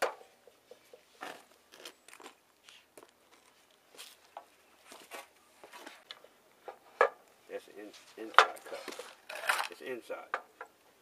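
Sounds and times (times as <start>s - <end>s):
knocks and clicks of wood and tools: 8.3s - 10.8s.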